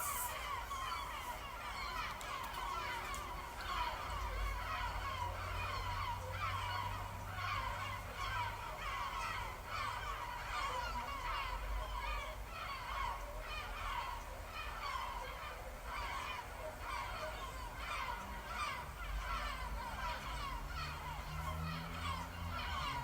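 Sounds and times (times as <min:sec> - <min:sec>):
seagulls calling: 0:00.0 - 0:23.0.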